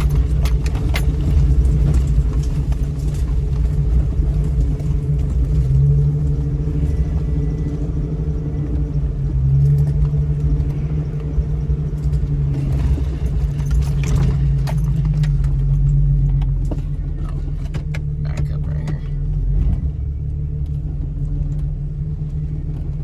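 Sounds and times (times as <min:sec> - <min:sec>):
light clicks and rattles: 0:00.0 - 0:05.9
car engine running: 0:00.0 - 0:23.0.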